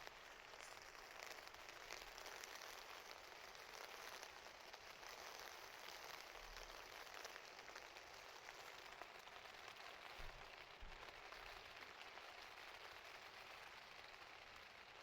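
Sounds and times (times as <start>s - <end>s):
wind-driven snow pattering: 0.1s - 15.0s.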